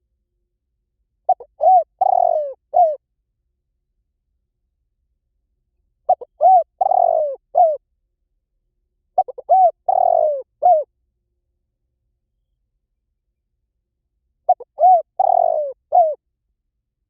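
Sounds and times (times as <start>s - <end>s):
dove cooing: 1.3s - 3.0s, 6.1s - 7.8s, 9.2s - 10.9s, 14.5s - 16.2s.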